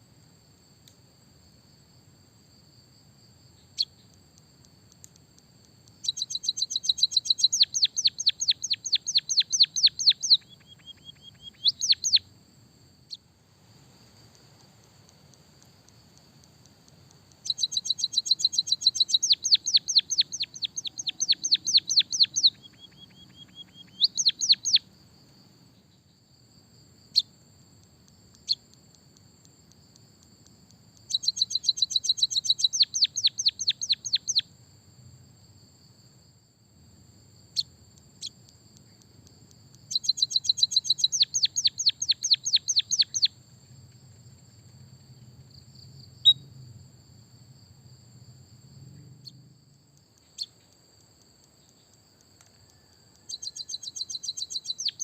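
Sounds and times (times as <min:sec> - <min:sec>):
faint high whine: 0:00.0 - 0:54.9
bird chirping trills: 0:05.9 - 0:12.3, 0:16.9 - 0:24.9, 0:31.0 - 0:34.4, 0:39.8 - 0:43.4, 0:50.2 - 0:55.0.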